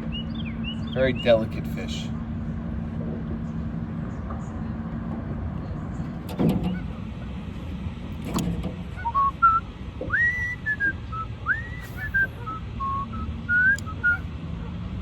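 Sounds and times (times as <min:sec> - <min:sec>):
person whistling a tune: 0:09.0 - 0:14.2.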